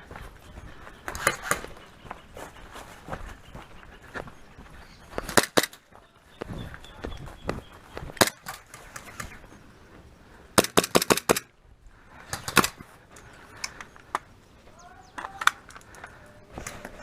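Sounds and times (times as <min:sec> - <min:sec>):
airsoft gun shots: 0:10.6 - 0:11.5.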